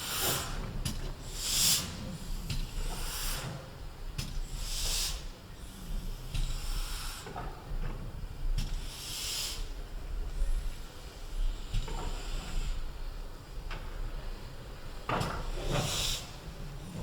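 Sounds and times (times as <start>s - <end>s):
locomotive steam hiss: 0.0s - 17.0s.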